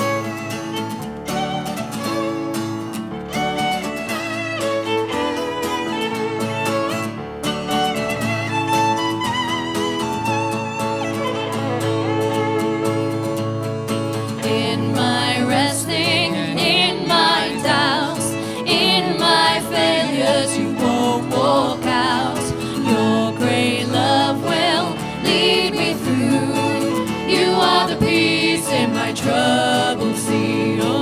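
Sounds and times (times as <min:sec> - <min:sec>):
instrumental backing: 0:00.0 - 0:31.0
worship song singing: 0:14.2 - 0:31.0.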